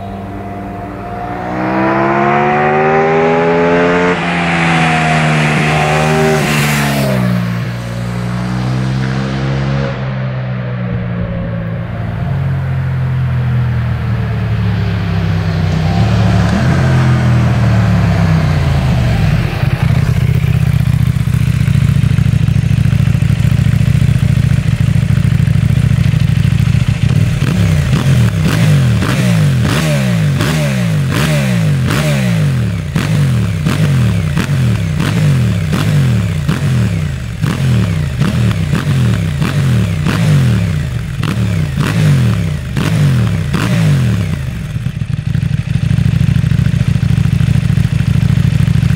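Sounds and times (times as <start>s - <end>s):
motorcycle engine revving: 0.0s - 48.9s
exhaust crackle: 9.9s - 29.6s.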